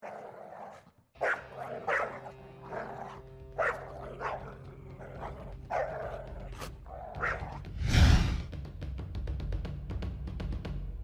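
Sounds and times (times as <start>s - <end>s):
dog barking: 0.0s - 7.6s.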